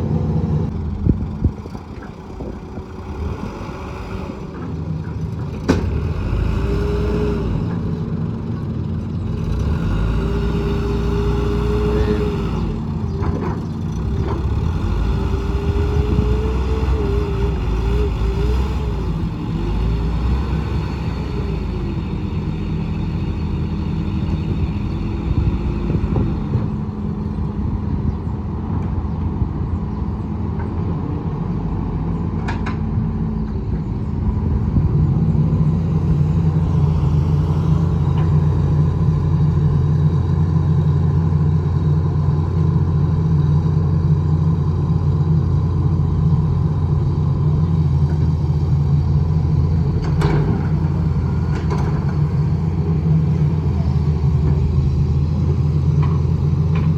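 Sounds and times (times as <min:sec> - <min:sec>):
excavator diesel engine: 0:00.0 - 0:56.9
hydraulic whine: 0:09.6 - 0:28.2.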